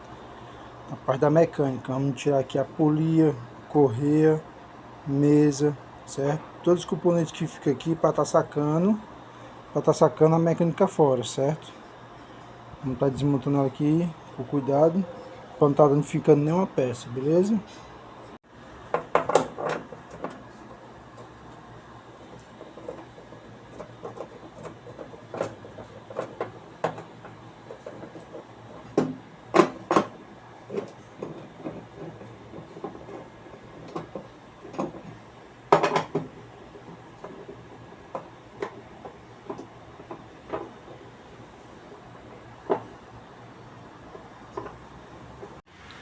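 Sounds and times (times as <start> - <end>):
tools and parts clattering: 18.9 - 21.6, 22.2 - 43.1.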